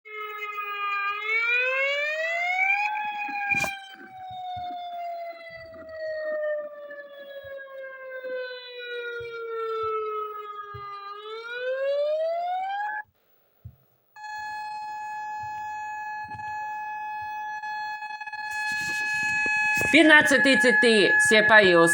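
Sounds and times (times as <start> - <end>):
civil defence siren wailing: 0.1 - 13.0, 14.2 - 21.9
steady siren tone: 0.1 - 13.1, 14.2 - 21.9.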